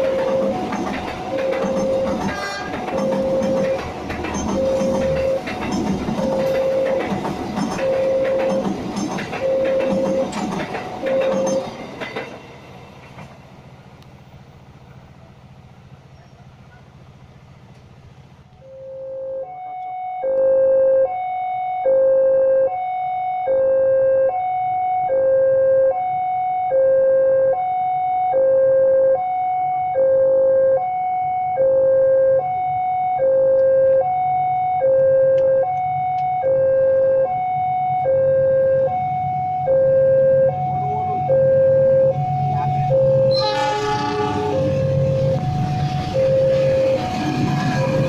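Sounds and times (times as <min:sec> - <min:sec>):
two-tone crossing alarm: 0:00.0 - 0:12.3, 0:18.6 - 0:48.0
train rumble: 0:00.0 - 0:18.6, 0:37.9 - 0:48.0.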